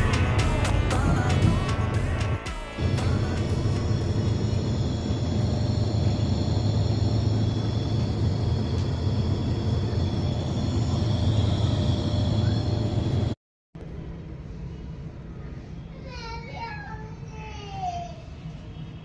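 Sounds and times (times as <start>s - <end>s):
air conditioner humming: 0.0s - 18.5s
faint high whine: 2.8s - 13.4s.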